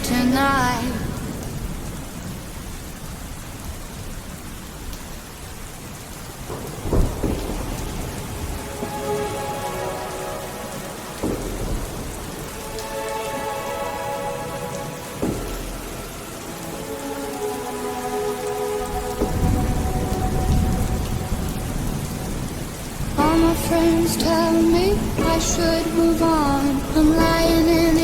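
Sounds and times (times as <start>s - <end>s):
heavy rain: 0.0s - 28.0s
thunder clap: 6.4s - 13.5s, 14.3s - 16.5s, 18.9s - 28.0s
faint sustained music tones: 6.6s - 28.0s.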